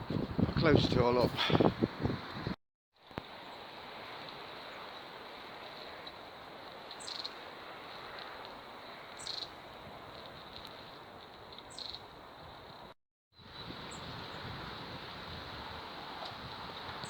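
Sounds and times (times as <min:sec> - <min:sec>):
wind hiss: 0:00.0 - 0:17.0
small bird calling: 0:06.9 - 0:07.4, 0:09.0 - 0:09.6, 0:11.7 - 0:12.1.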